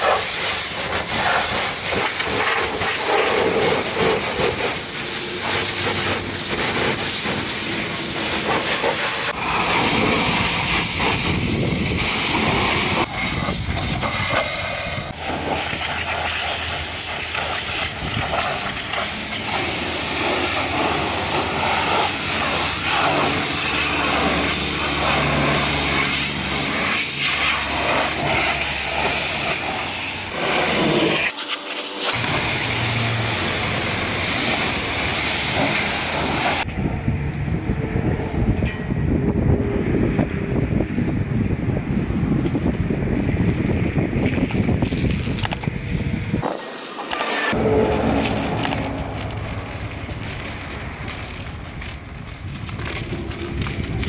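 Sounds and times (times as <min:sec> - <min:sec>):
pressure washer spray hissing: 0:00.0 - 0:36.7
low hum: 0:47.4 - 0:54.0.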